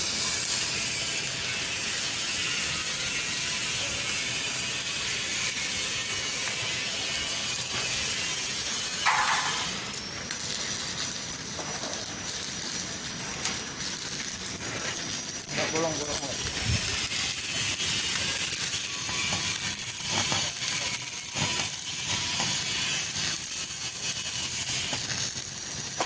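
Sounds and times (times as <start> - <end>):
welding arc crackling hiss: 0.0 - 26.0.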